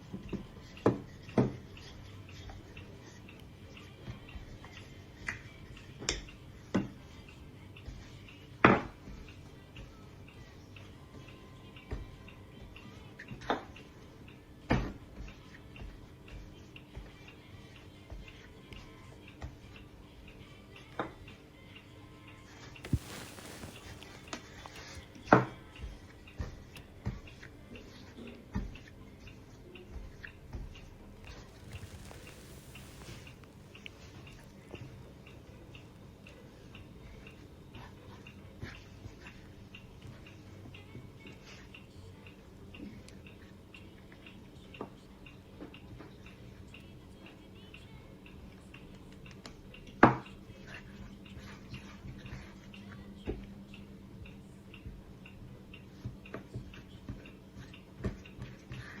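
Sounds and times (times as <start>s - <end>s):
faint small ticking: 0.1s - 37.5s.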